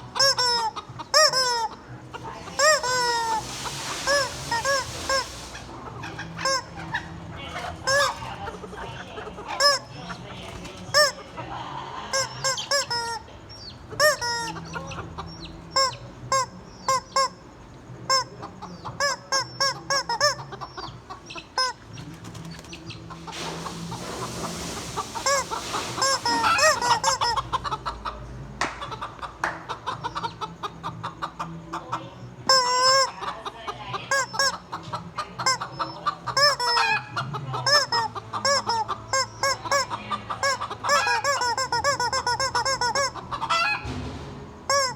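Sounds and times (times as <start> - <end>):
chickens clucking: 0.0 - 44.9
hiss: 2.6 - 5.9, 23.2 - 27.3.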